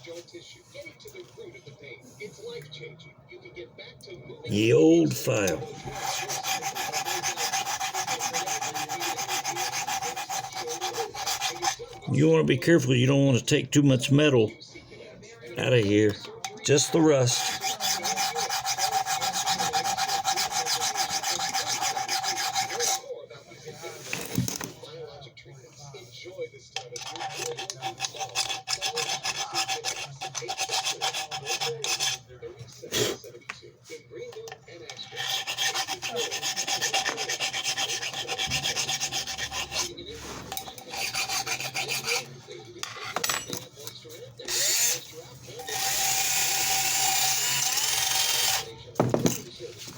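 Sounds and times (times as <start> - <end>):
metal file rasping on cast iron: 4.6 - 12.1, 16.7 - 23.0, 27.0 - 32.3, 35.0 - 43.4.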